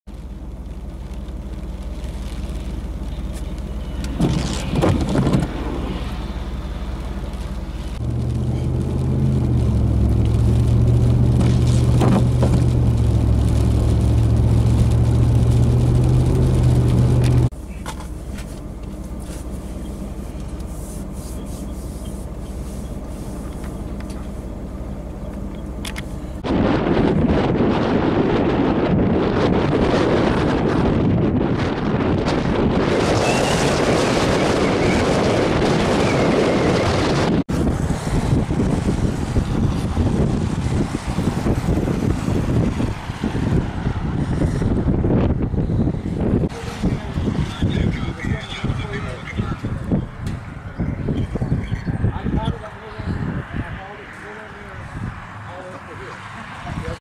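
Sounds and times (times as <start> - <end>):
vehicle engine humming: 0.1 - 57.0
rustling scrape: 4.1 - 6.3, 17.9 - 24.5.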